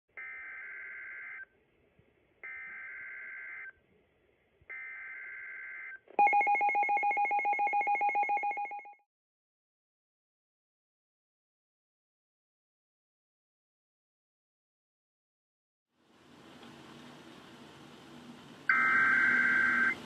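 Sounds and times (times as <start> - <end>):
digital data tone bursts: 18.7 - 20.0.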